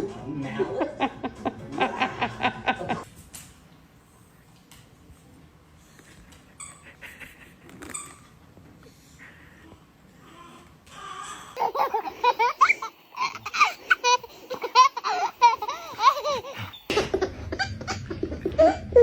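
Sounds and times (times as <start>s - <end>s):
baby laughing: 11.6s - 19.0s.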